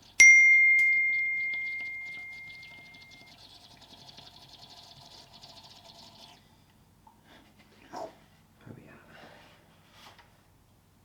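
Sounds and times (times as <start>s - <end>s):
metallic ring: 0.0s - 3.2s
faint steady hiss: 0.0s - 11.0s.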